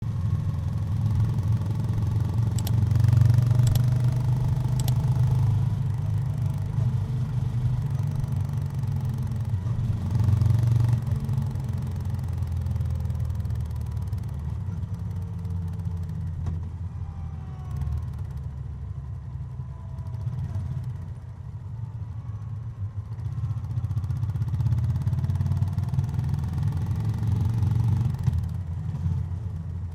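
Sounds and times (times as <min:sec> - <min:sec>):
motorcycle engine running: 0:00.0 - 0:29.9
brief clicks: 0:02.5 - 0:05.1.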